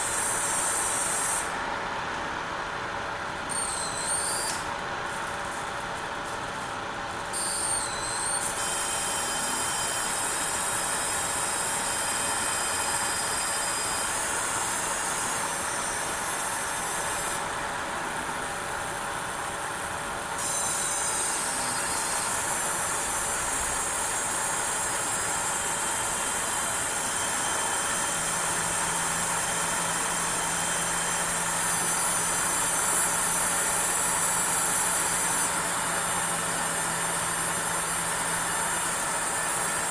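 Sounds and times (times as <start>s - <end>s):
high-pitched coil whine: 3.5s - 4.7s, 7.3s - 17.5s.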